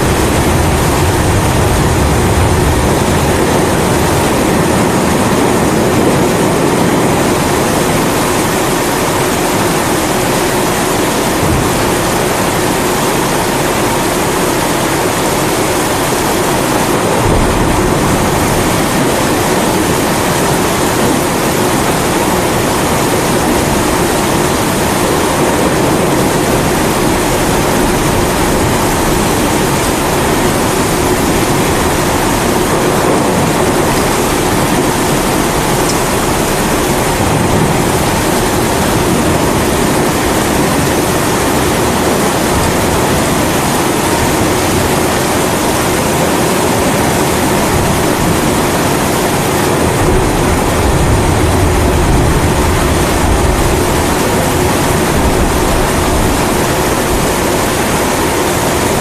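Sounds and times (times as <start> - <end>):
stove burner roaring: 0.0 - 6.2
low rumble: 0.0 - 8.2, 11.1 - 43.2, 49.7 - 57.9
heavy rain hissing: 0.0 - 59.0.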